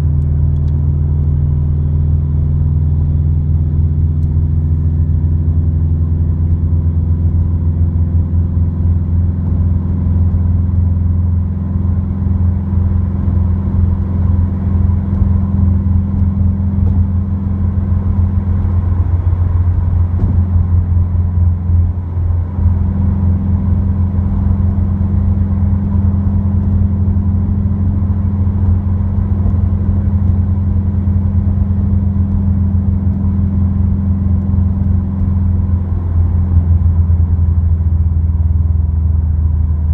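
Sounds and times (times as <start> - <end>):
low exhaust drone: 0.0 - 39.9
road noise: 0.0 - 39.9.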